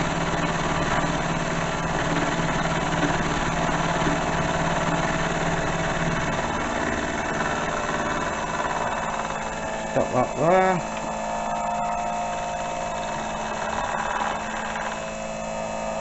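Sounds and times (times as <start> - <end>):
milling machine motor hum and whine: 0.0 - 16.0
cutter cutting steel: 7.2 - 16.0.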